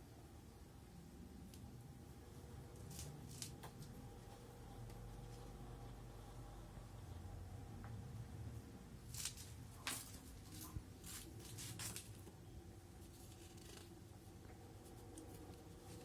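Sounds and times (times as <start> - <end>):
faint low hum: 0.0 - 16.0
paper rustling and scraping: 9.1 - 12.3.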